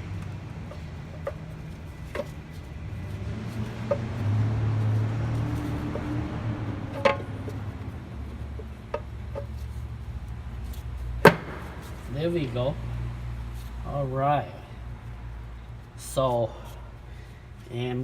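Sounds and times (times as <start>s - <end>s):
steady low hum: 0.0s - 18.0s
engine part clicks and knocks: 0.7s - 2.4s, 3.8s - 4.2s, 6.9s - 7.7s, 8.5s - 9.6s.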